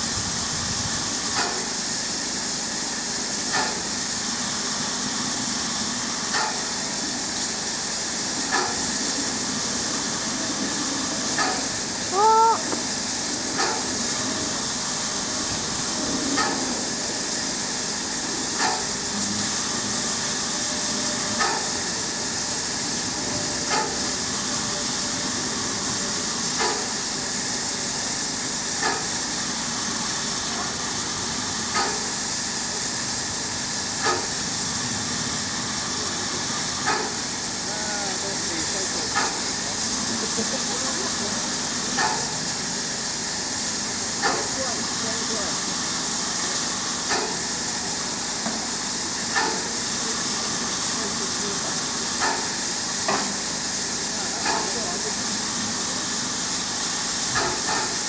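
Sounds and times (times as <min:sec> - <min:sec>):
freight train rushing hiss: 0:00.0 - 0:58.0
faint train wheel clicks: 0:01.2 - 0:02.2, 0:03.2 - 0:04.3, 0:06.3 - 0:06.8, 0:18.5 - 0:19.2, 0:21.4 - 0:22.9, 0:23.6 - 0:25.0, 0:26.5 - 0:27.1, 0:28.7 - 0:29.3, 0:31.7 - 0:32.9, 0:34.0 - 0:34.5, 0:36.8 - 0:37.4, 0:38.8 - 0:40.2, 0:41.6 - 0:44.8, 0:46.4 - 0:50.9, 0:52.1 - 0:55.0, 0:57.0 - 0:58.0.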